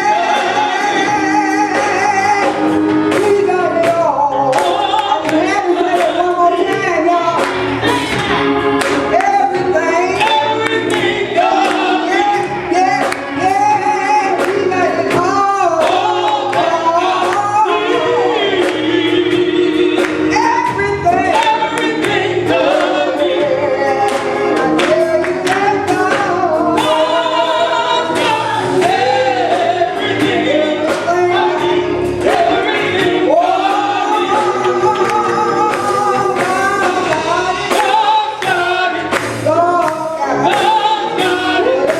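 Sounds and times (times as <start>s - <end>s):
choir singing gospel: 0.0s - 41.9s
sharp percussive hits: 1.7s - 23.5s.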